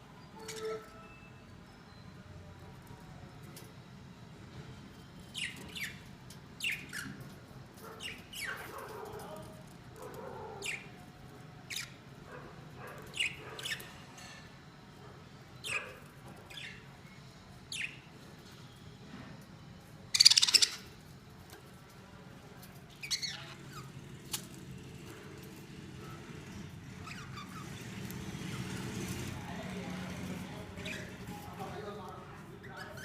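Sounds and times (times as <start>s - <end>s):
budgerigars chirping: 12.9s - 13.9s, 20.2s - 20.9s, 23.0s - 23.9s, 27.0s - 27.9s.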